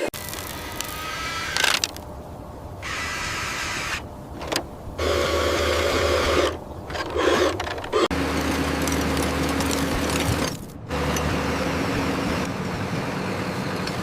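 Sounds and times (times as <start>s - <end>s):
small motor whirring hum: 2.8s - 8.1s.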